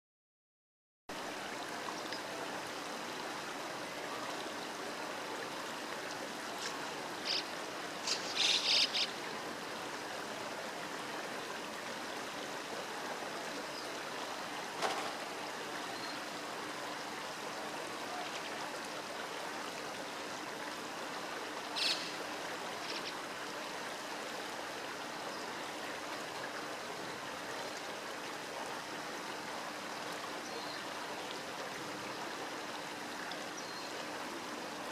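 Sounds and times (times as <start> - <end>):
river water rushing: 1.1 - 34.9
kingfisher calls: 7.2 - 9.2, 21.8 - 22.2.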